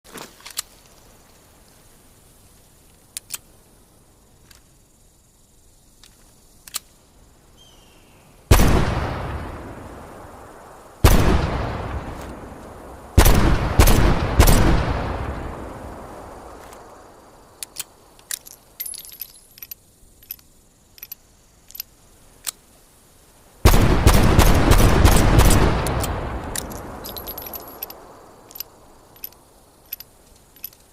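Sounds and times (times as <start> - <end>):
small metallic clicks and clinks: 17.6 - 22.6, 26.0 - 30.9.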